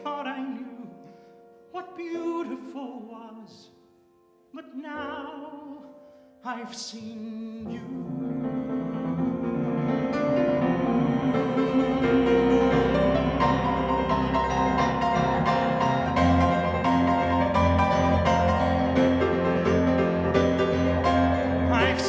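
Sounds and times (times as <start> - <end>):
piano playing: 0.0 - 22.0.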